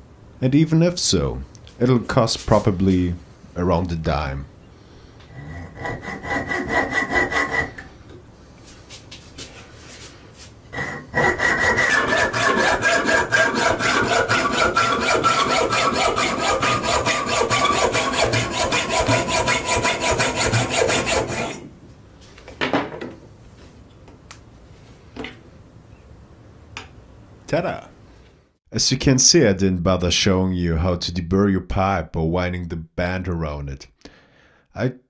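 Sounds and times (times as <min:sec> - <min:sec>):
hand saw cutting metal pipe: 0:05.6 - 0:07.9, 0:10.7 - 0:21.7.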